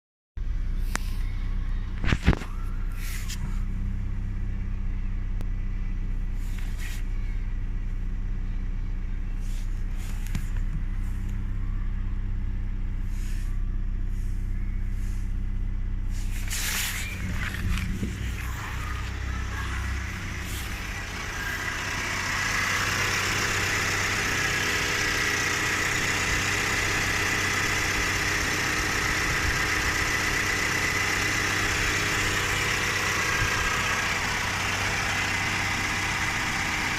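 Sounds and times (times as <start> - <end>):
car engine idling: 0.4 - 36.9.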